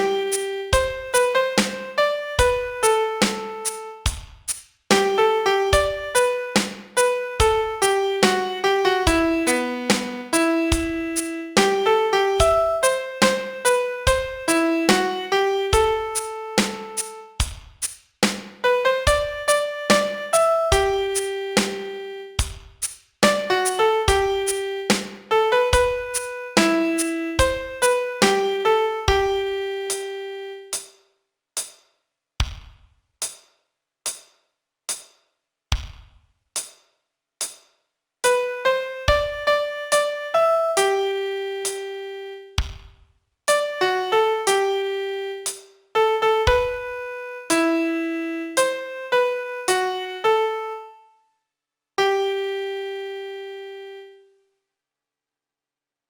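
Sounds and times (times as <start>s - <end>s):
piano melody: 0.0s - 4.1s, 4.9s - 17.4s, 18.6s - 22.4s, 23.2s - 30.7s, 38.2s - 42.5s, 43.5s - 51.0s, 52.0s - 54.2s.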